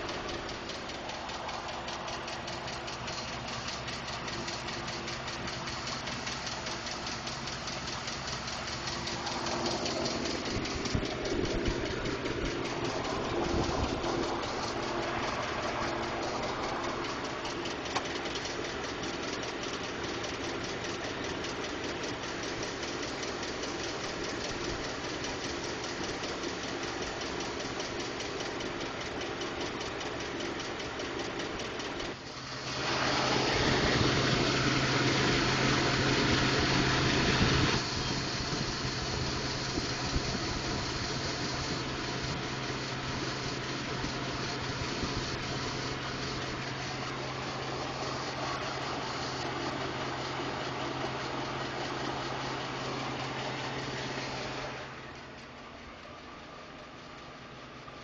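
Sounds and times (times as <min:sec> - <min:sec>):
engine running with ticking: 0:00.0 - 0:58.0
steady rushing noise: 0:09.0 - 0:17.6.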